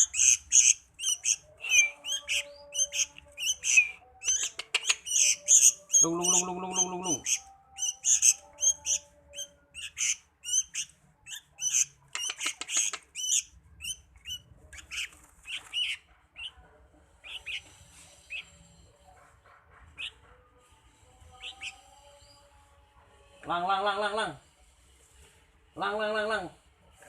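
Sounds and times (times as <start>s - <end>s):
songbird chirping: 0.0s - 23.3s.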